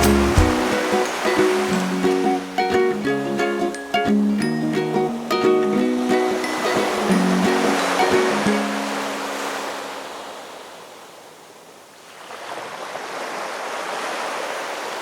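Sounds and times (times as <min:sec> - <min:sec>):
ocean surf washing on beach: 0:00.0 - 0:04.2, 0:04.9 - 0:15.0
ukulele music: 0:00.0 - 0:09.4.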